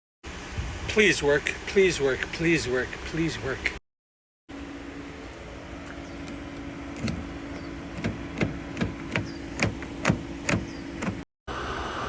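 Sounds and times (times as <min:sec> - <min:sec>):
motor humming: 0:04.5 - 0:12.0.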